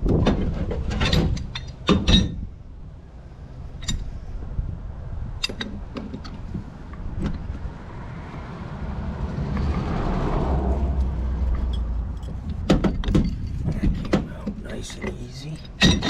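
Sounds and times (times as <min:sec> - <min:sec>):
vehicle passing by: 0:07.1 - 0:12.7
steady low rumble: 0:13.3 - 0:15.8.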